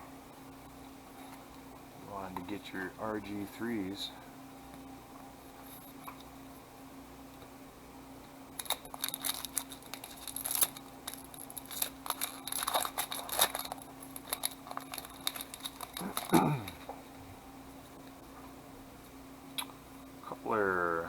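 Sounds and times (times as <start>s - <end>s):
wrappers crinkling and tearing: 8.6s - 16.9s.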